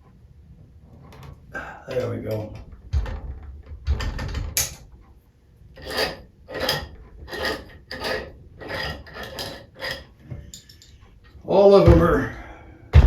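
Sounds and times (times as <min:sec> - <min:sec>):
metal knocks: 0:01.9 - 0:05.0.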